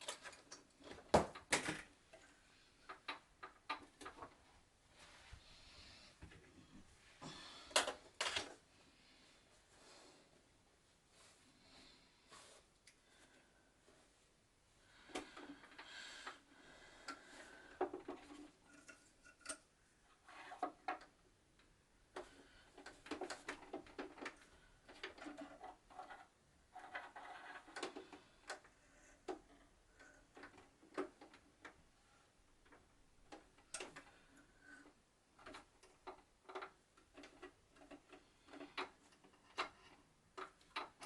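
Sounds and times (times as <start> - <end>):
small hard parts clicking and clattering: 0.0 - 4.4, 7.7 - 8.6, 15.1 - 31.8, 32.6 - 41.0.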